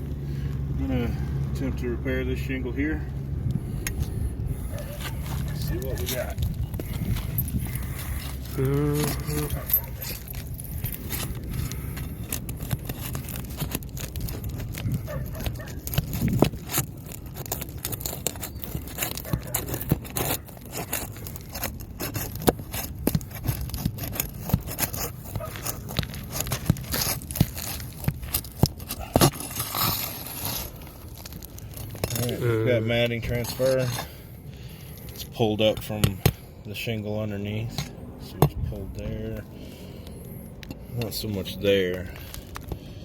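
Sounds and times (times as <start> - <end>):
roof shingle scraping: 3.5 - 43.0
sealant tearing clicks and crackles: 5.1 - 32.4.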